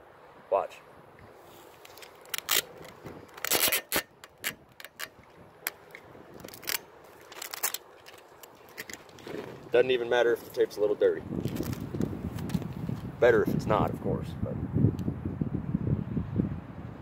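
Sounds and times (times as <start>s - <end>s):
packing tape crackling: 1.8s - 9.6s
tape ripping off roll: 1.8s - 9.7s.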